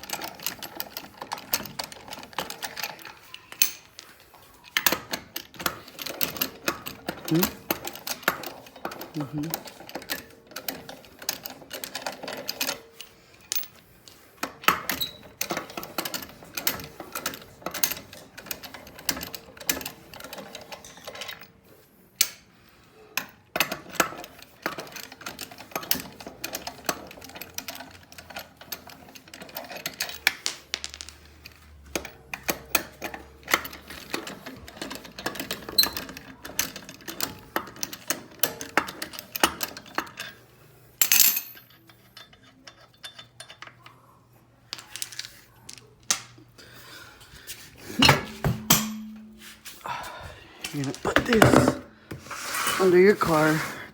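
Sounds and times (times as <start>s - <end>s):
small metallic clinks: 41.0s - 44.0s.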